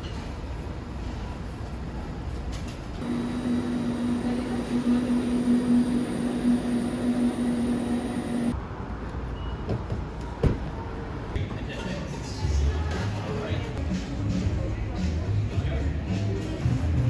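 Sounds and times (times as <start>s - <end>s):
vehicle droning hum: 3.0s - 8.6s.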